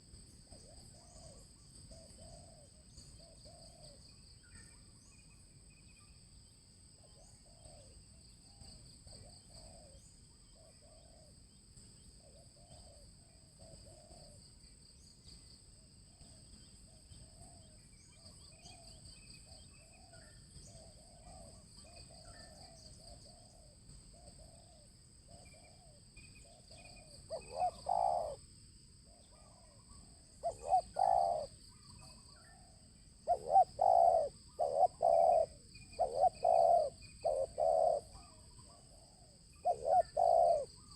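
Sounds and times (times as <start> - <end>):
dove cooing loudly close by: 0.0 - 4.0, 9.0 - 10.0, 13.6 - 14.4, 19.8 - 26.0, 26.6 - 28.4, 29.1 - 40.9
distant doves cooing: 0.0 - 5.1, 7.1 - 11.4, 12.2 - 14.4, 16.1 - 28.4, 29.1 - 40.9.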